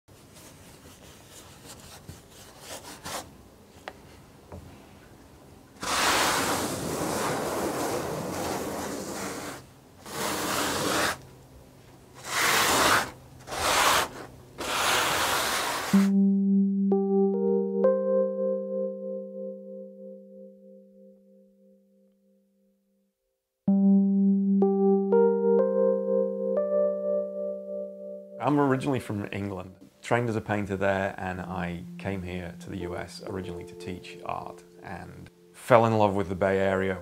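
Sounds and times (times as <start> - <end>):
sanding strokes on a surface: 5.8 - 11.2, 12.2 - 16.0
music with ringing bowl tones: 15.9 - 22.7, 23.7 - 29.8, 31.4 - 37.0.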